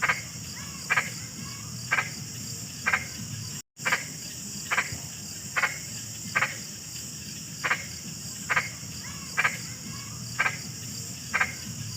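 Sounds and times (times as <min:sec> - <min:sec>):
crickets droning: 0:00.0 - 0:11.9
frog croaking: 0:00.0 - 0:11.9.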